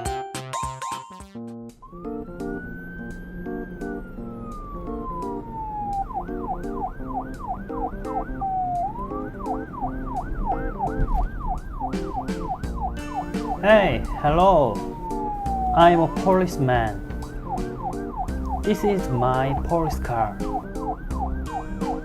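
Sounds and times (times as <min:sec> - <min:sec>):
police siren wailing and yelping: 0:01.8 - 0:22.0
music with steady beat: 0:10.8 - 0:22.0.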